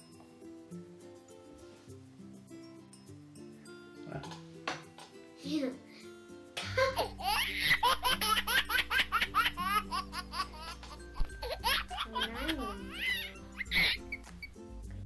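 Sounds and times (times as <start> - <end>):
background music: 0.0 - 15.0
high-pitched giggling: 6.7 - 14.2.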